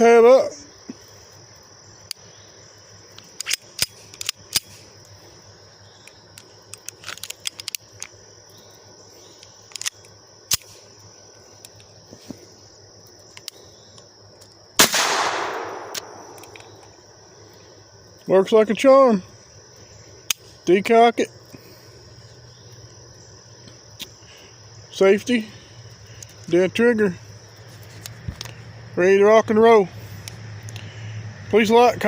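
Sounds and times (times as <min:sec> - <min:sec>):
cricket chirring: 0:00.0 - 0:32.0
small metallic clicks: 0:03.1 - 0:04.9, 0:06.0 - 0:08.2, 0:09.3 - 0:10.8, 0:15.4 - 0:16.9, 0:30.2 - 0:30.9
pistol action clacking: 0:14.8 - 0:16.9.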